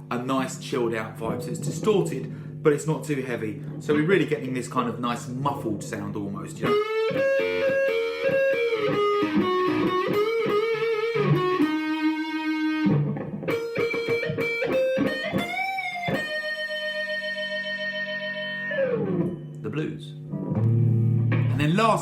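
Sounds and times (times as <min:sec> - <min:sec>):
overdriven electric guitar blues lick: 0:06.6 - 0:19.6, 0:20.2 - 0:22.0.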